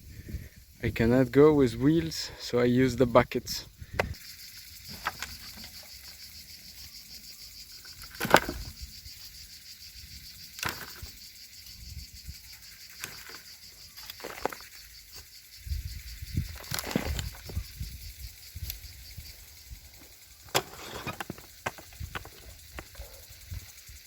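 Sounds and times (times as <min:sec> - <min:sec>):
buckets knocking and scraping: 0:07.8 - 0:08.9, 0:10.6 - 0:11.3, 0:12.9 - 0:15.3, 0:16.4 - 0:17.6, 0:20.4 - 0:23.6.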